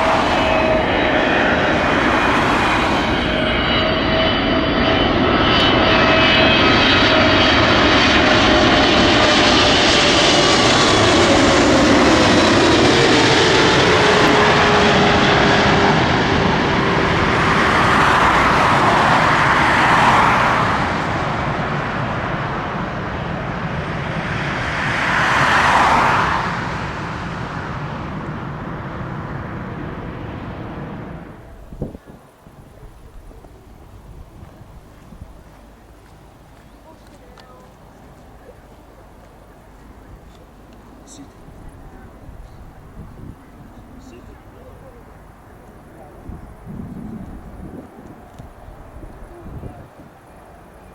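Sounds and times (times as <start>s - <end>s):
jet engine whine falling in pitch: 0.0s - 34.4s
jet engines rumbling: 0.0s - 50.9s.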